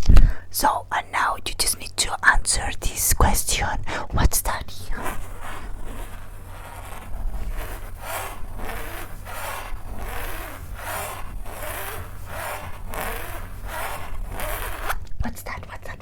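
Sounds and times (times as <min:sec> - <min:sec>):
scratchy rubbing on microphone: 0:00.6 - 0:16.0.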